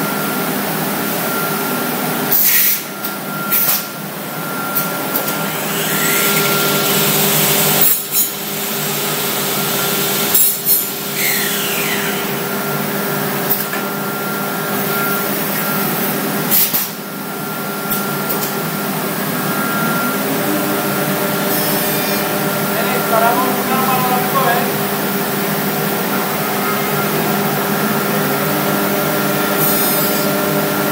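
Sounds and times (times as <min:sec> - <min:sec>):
machine spindle whining: 0:02.5 - 0:30.9.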